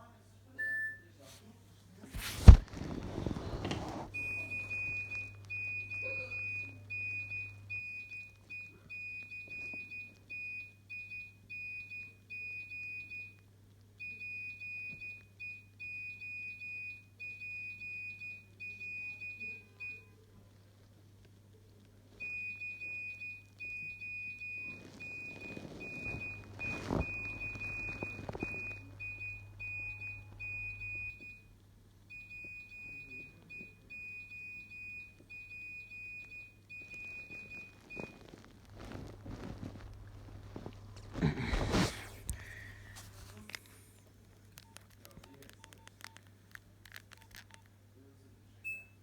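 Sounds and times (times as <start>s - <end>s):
phone ringtone high thin beeps: 0.6s - 1.2s.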